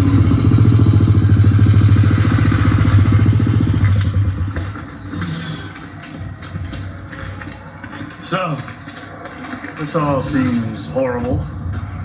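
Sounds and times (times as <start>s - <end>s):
motorcycle engine chugging: 0.0s - 5.3s.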